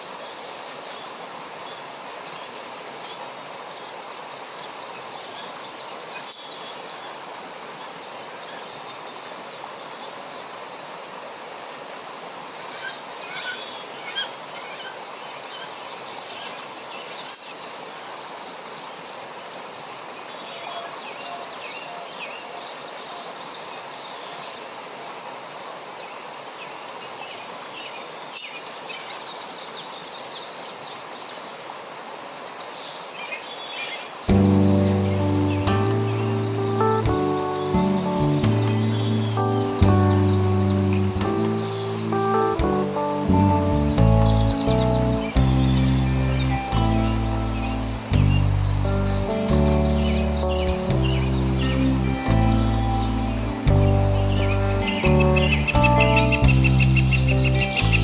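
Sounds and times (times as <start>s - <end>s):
outdoor background hiss: 0.0s - 58.0s
birds chirping: 25.8s - 58.0s.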